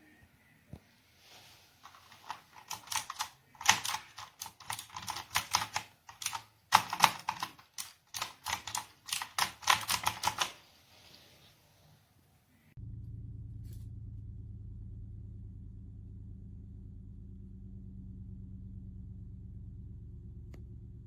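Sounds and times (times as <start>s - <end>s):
mechanical keyboard key clicks: 1.9s - 10.5s.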